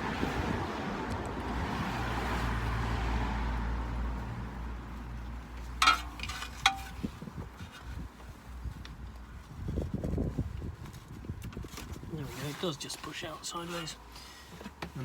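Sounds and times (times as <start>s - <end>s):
vehicle passing by: 0.0s - 5.4s.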